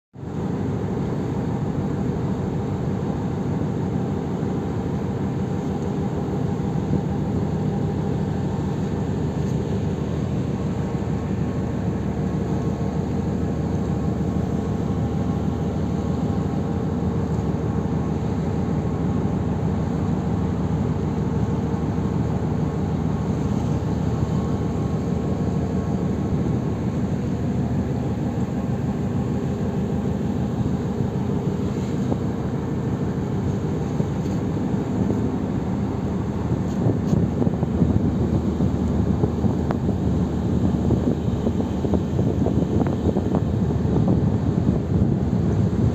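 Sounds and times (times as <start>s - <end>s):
ship engine drone: 0.2s - 45.9s.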